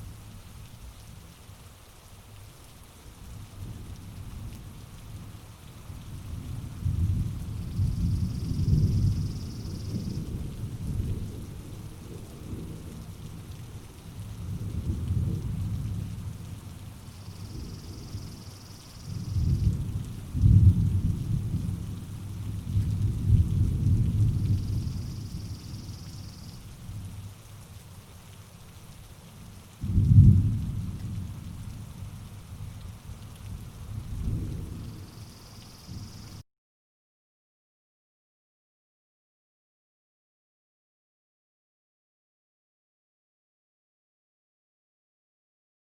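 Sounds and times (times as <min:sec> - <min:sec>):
rain falling in a forest: 0:00.0 - 0:36.4
low rumble of thunder: 0:05.9 - 0:27.4, 0:29.8 - 0:36.4
rolling thunder: 0:19.1 - 0:21.8, 0:29.8 - 0:31.6, 0:34.0 - 0:35.0
loud peal of thunder: 0:29.8 - 0:30.8.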